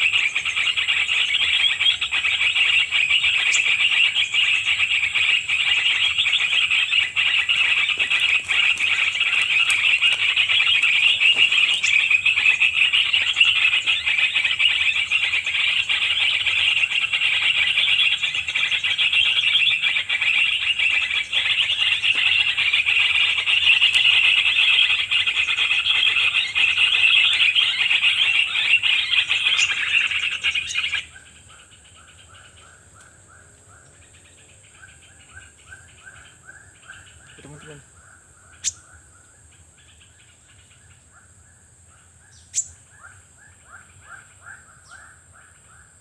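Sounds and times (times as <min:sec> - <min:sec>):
cicada buzzing: 0:00.0 - 0:31.7.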